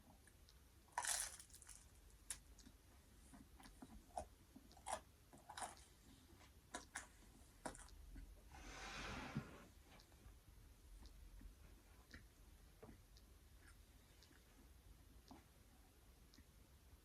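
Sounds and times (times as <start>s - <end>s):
soft chewing: 0.1s - 8.6s, 9.8s - 16.6s
bite crunch: 0.9s - 2.7s.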